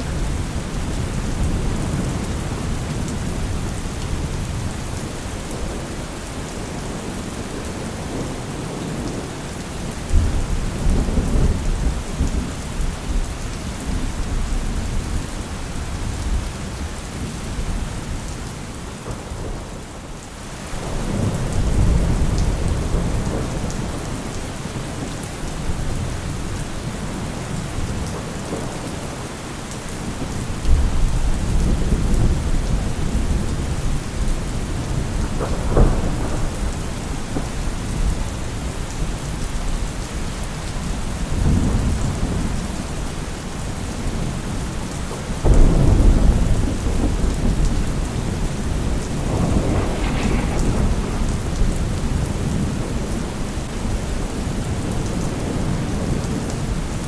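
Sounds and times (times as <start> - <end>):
heavy rain: 0.0 - 57.0
thunder rumbling: 20.8 - 25.0, 30.0 - 39.8, 43.6 - 57.0
thunder crack: 34.9 - 38.1, 45.4 - 54.1.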